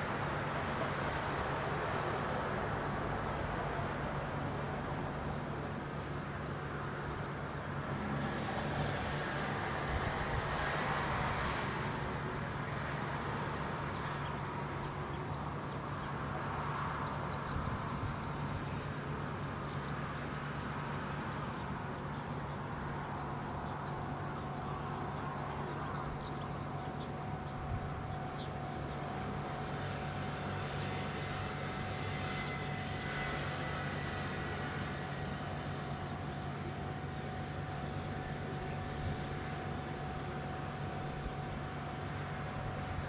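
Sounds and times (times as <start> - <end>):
harvester engine humming: 17.5 - 43.0.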